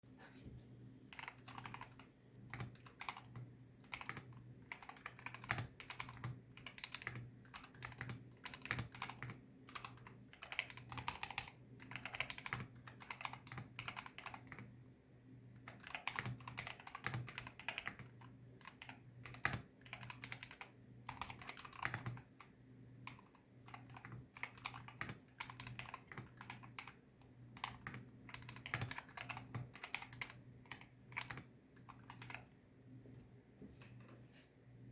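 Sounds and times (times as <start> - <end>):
mechanical keyboard keystroke clacks: 1.2 - 14.6, 15.6 - 22.2, 23.1 - 27.0, 27.6 - 32.5.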